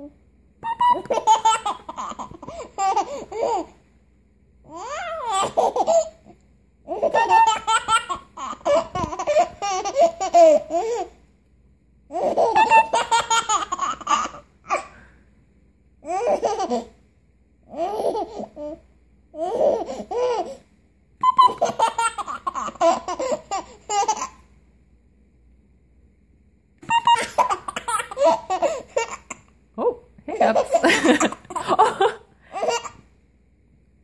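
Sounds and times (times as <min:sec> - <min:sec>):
child laughing: 0:00.7 - 0:03.7, 0:06.9 - 0:11.1, 0:12.2 - 0:14.8, 0:26.9 - 0:29.4, 0:30.6 - 0:33.0.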